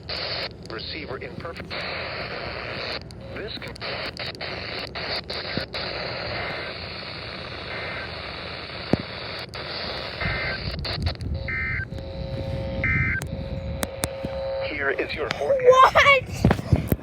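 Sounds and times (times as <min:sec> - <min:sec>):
short data bursts: 0:00.0 - 0:15.8
radio static hiss and crackle: 0:00.0 - 0:16.9
buzzing alert tone: 0:02.7 - 0:15.1.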